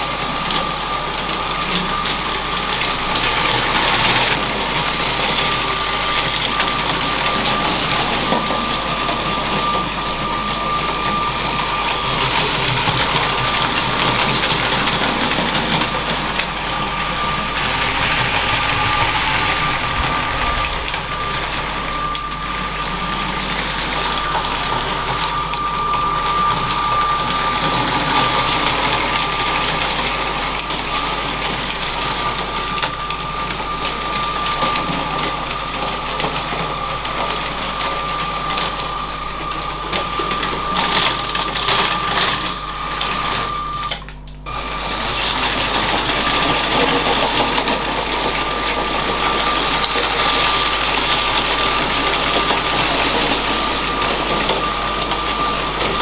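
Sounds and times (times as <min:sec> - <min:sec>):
toy train motor whine: 0:00.0 - 0:37.5, 0:38.2 - 0:56.0
wheels clicking over plastic track: 0:11.3 - 0:22.4.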